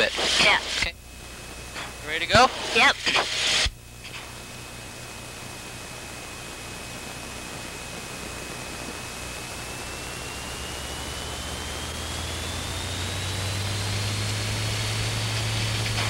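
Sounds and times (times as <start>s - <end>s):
steady hiss: 0.0s - 12.0s
light aircraft engine and propeller: 3.9s - 16.0s.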